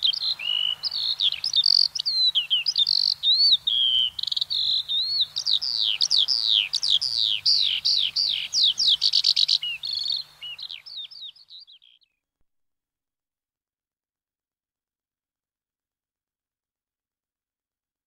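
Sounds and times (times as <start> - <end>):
skylark singing: 0.0 - 12.2.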